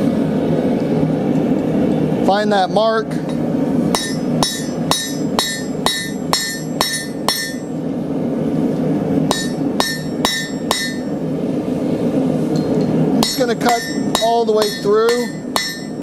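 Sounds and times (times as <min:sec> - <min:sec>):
hammer ringing on hot steel: 0:03.1 - 0:07.8, 0:09.3 - 0:11.2, 0:12.5 - 0:16.0.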